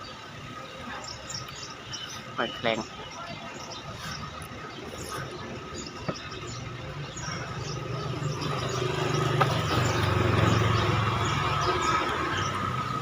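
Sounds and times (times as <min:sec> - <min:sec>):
vehicle engine passing by: 0:06.4 - 0:13.0.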